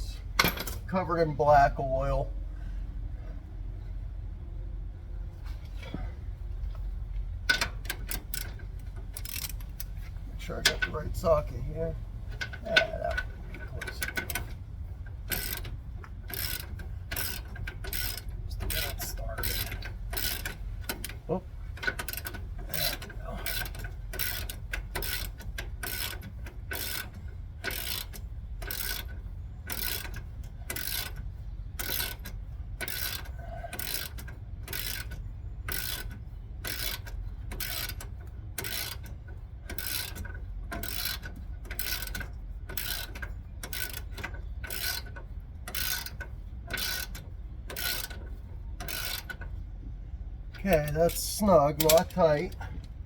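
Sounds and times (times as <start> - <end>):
socket ratchet clicking: 7.5 - 10.0, 15.2 - 21.2, 21.8 - 49.5.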